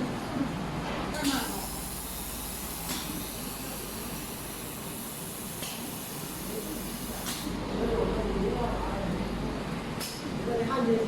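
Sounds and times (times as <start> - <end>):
welding machine hiss: 1.2 - 7.6.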